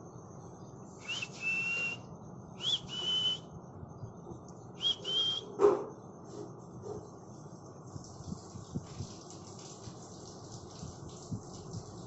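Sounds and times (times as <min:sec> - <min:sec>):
high whistling notes: 0:01.0 - 0:02.0, 0:02.6 - 0:03.5, 0:04.8 - 0:05.5.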